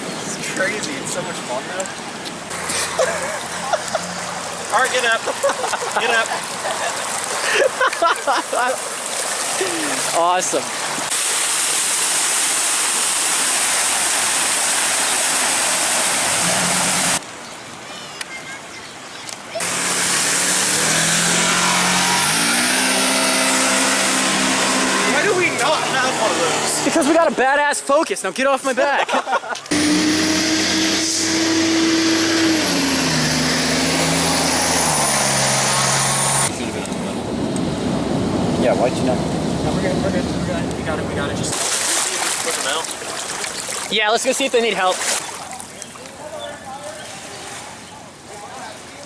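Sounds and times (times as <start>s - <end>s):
floodwater rushing: 0.0s - 27.9s, 28.8s - 49.0s
motor running: 19.6s - 27.0s, 29.7s - 36.5s
loud rushing noise: 29.7s - 41.6s.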